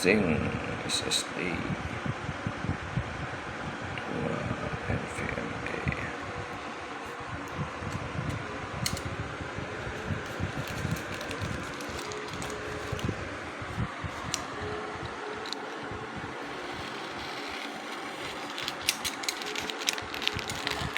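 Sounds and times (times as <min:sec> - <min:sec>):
fan whirring: 0:00.0 - 0:20.9.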